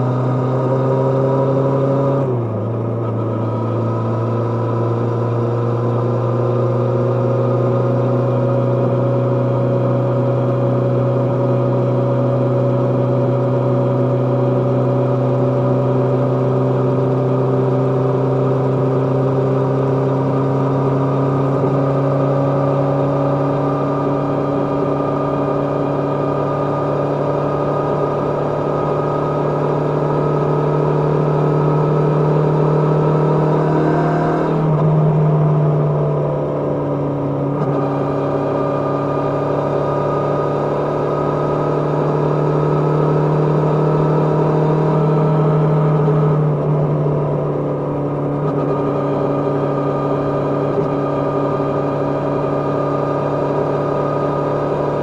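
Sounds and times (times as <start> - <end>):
motorcycle engine running: 2.6 - 55.0.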